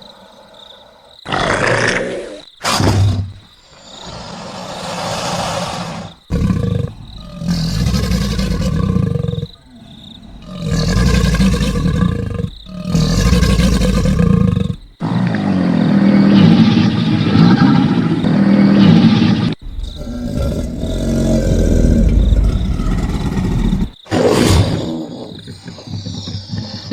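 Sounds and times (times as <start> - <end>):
crocodiles growling and bellowing: 1.3 - 26.9.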